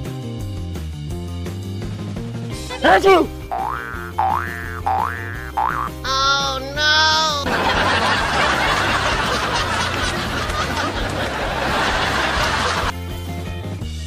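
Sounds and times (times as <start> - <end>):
high-pitched laughs: 2.6 - 3.7, 5.4 - 12.9
mass of laughter: 7.1 - 12.9.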